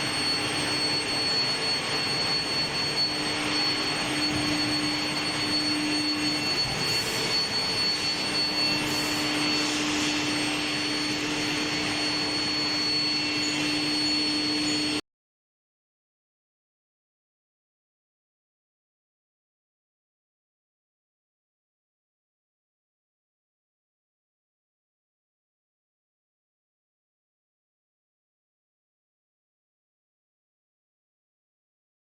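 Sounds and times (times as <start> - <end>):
high whine: 0.0 - 15.0.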